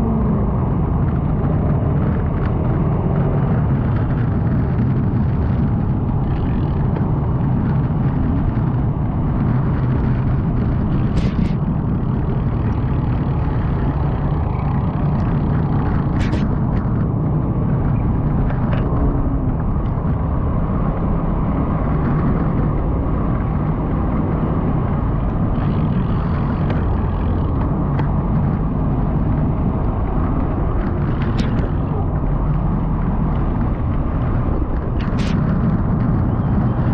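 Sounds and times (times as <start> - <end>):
road rumble: 0.0 - 36.9
wind on microphone: 0.0 - 36.9.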